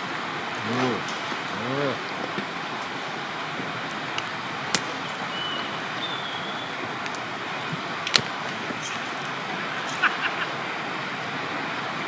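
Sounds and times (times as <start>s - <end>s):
campfire crackling: 0.0s - 12.0s
sharp fire pops: 3.9s - 5.7s, 6.6s - 9.4s.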